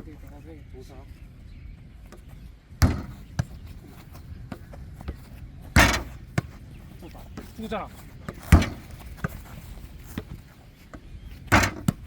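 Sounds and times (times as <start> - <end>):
football thudding on a table: 2.8 - 3.5, 5.8 - 6.5, 8.3 - 9.4, 11.5 - 12.0.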